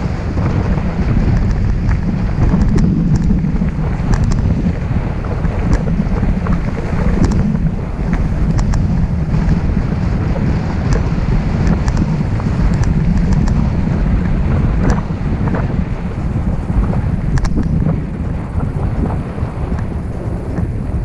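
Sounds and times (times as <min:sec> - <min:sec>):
wind buffeting microphone: 0:00.0 - 0:21.0
small clicks: 0:01.3 - 0:03.4, 0:04.0 - 0:04.5, 0:06.5 - 0:07.5, 0:08.1 - 0:09.6, 0:11.6 - 0:13.6, 0:17.3 - 0:17.7.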